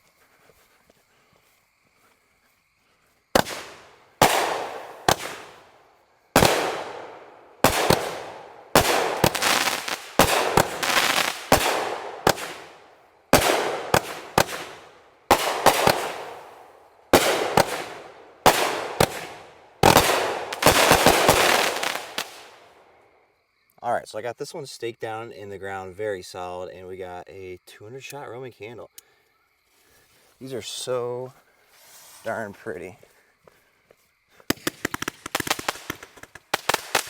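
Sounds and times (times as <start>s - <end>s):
firework cake shots: 3.4s - 5.7s, 6.4s - 22.8s, 34.5s - 37.0s.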